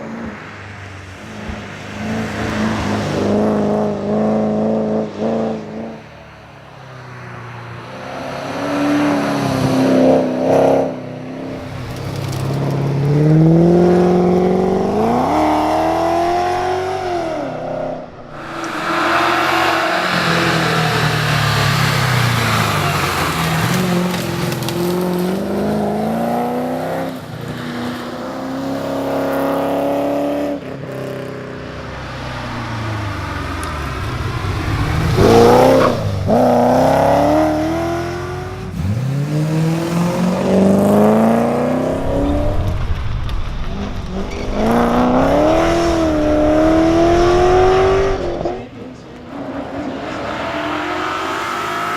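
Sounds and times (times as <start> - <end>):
car engine revving hard: 33.9 - 42.8, 44.2 - 48.7.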